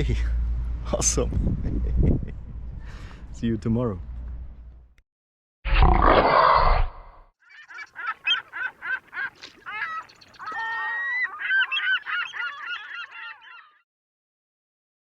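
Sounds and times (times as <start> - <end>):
birds honking calls: 7.5 - 13.8.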